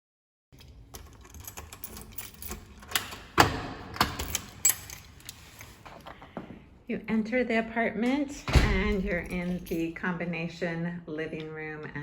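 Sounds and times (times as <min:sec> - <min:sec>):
keys jangling: 0:00.6 - 0:05.8, 0:08.8 - 0:10.0
door lock clicking: 0:01.0 - 0:05.0.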